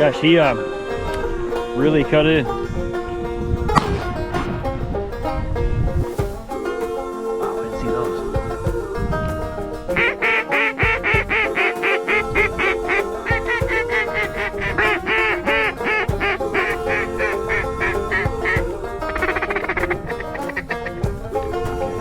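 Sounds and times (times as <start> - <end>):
background music: 0.0 - 22.0
mallard quacking: 7.4 - 22.0.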